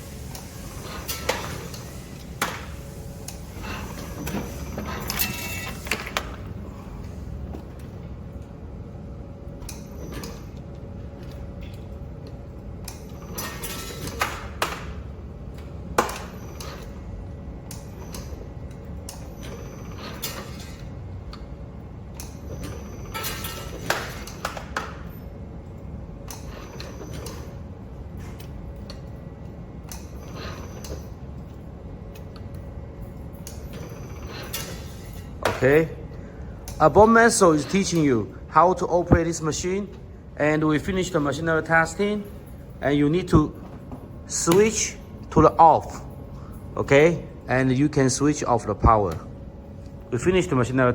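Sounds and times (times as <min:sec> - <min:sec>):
steady motor hum: 0:00.0 - 0:50.9.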